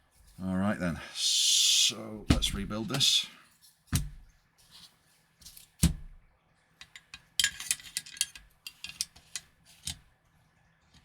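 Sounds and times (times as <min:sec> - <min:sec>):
small clicks and rattles: 0:06.8 - 0:10.1.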